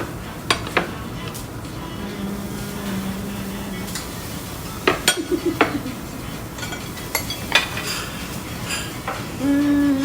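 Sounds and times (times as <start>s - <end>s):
utensils knocking against dishes: 0.0s - 2.2s, 3.7s - 9.4s
restaurant background noise: 0.0s - 10.0s.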